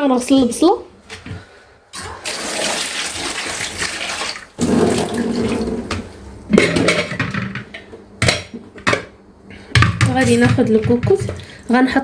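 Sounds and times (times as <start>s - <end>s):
kitchen tap running: 1.9s - 6.1s, 9.8s - 12.0s.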